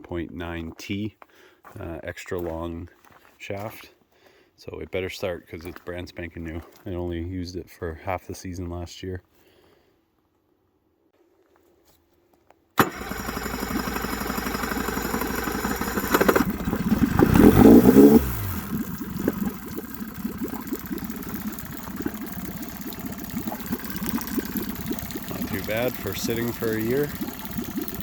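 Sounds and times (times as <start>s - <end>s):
outboard motor running: 12.8s - 28.0s.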